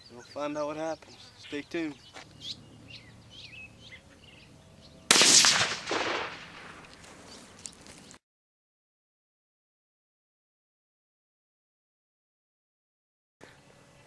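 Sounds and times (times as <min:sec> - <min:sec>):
birds chirping: 0:00.0 - 0:08.2, 0:13.4 - 0:14.0
rifle shot echoing: 0:05.1 - 0:07.5.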